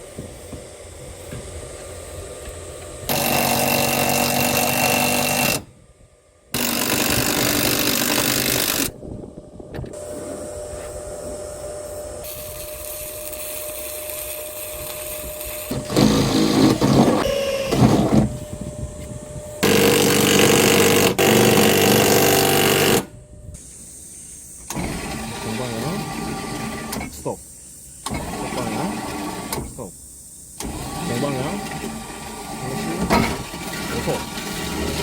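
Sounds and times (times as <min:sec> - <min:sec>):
electric motor whining: 0:01.2 - 0:05.8, 0:06.6 - 0:23.2.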